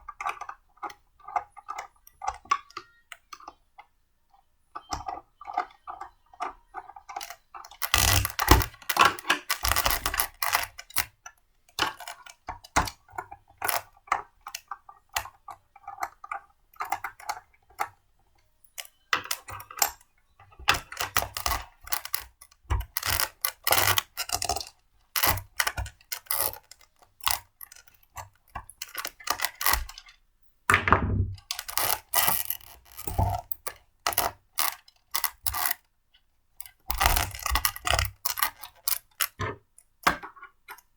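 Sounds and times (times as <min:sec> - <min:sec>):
blender parts clicking and clattering: 0:04.8 - 0:11.1, 0:20.6 - 0:30.2, 0:30.8 - 0:35.8, 0:36.6 - 0:40.9.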